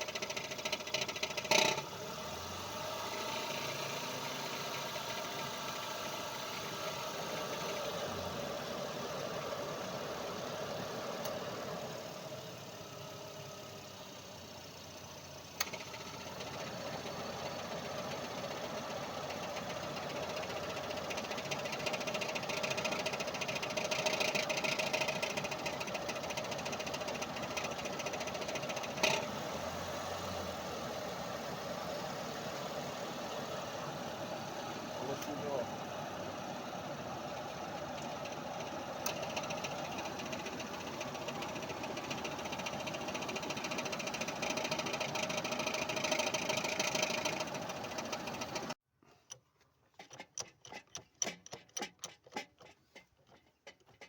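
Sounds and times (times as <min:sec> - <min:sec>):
rotary engine running with knock: 0:00.0 - 0:01.9, 0:15.6 - 0:29.3, 0:37.9 - 0:48.8.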